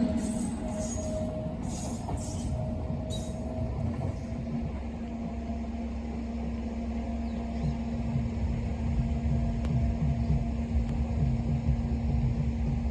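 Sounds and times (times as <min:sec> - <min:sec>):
locomotive rumble and hum: 0:00.0 - 0:12.9.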